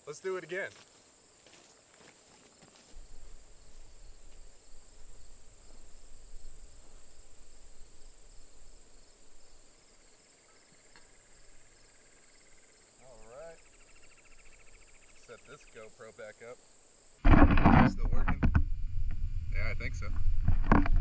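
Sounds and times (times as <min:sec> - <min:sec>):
crickets chirring: 0:00.0 - 0:17.2
low rumble: 0:17.4 - 0:21.0.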